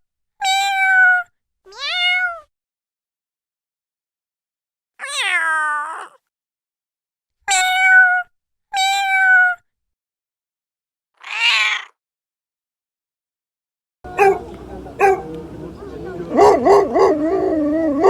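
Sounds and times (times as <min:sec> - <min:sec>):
cat meowing: 0:00.4 - 0:02.4, 0:05.0 - 0:06.2, 0:11.2 - 0:11.9.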